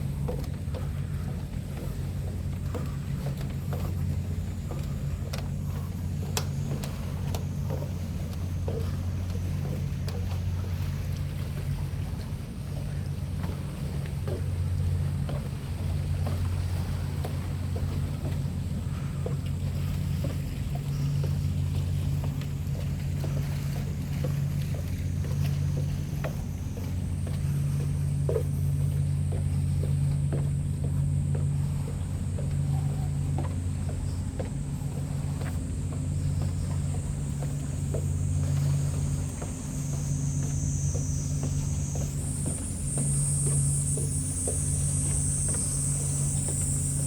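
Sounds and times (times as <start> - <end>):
faint scattered ticks: 0.0 - 47.0
low mechanical drone: 0.0 - 47.0
light ticks: 4.7 - 5.5, 6.2 - 10.4
thin high whine: 20.9 - 47.0.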